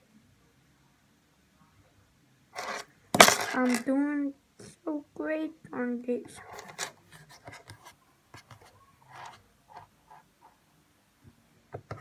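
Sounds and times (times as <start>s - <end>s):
hands working play dough: 6.2s - 10.6s.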